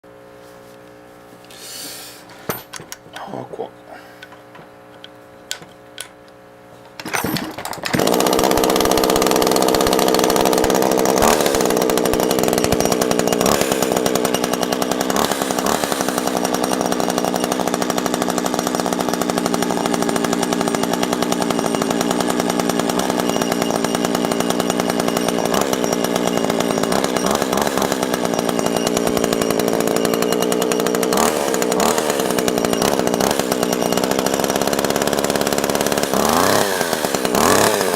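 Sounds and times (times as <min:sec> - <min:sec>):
chainsaw engine running: 0:07.0 - 0:37.9.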